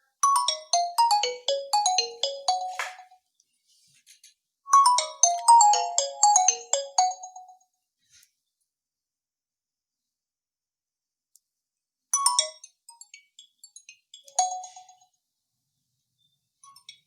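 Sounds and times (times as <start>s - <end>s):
phone ringtone with bright notes: 0.2s - 3.2s, 4.7s - 7.6s, 14.3s - 15.0s.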